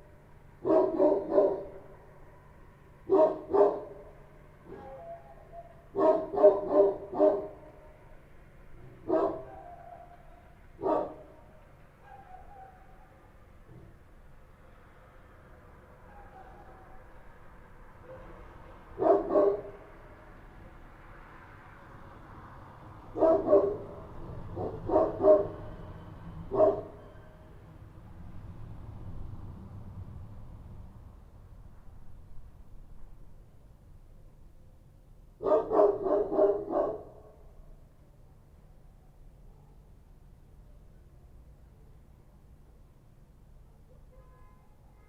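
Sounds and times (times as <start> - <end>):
dog barking: 0.6 - 8.0, 8.9 - 10.2, 10.8 - 14.0, 16.0 - 17.1, 18.0 - 18.4, 19.0 - 20.0, 23.1 - 25.8, 26.5 - 27.2, 35.4 - 37.4.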